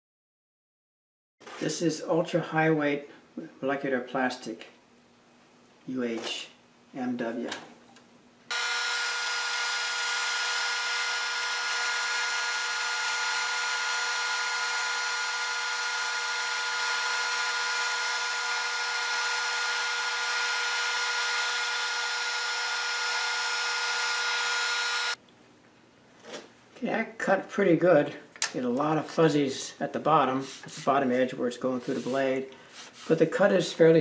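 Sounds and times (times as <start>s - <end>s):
band saw cutting plastic: 8.5s - 25.2s.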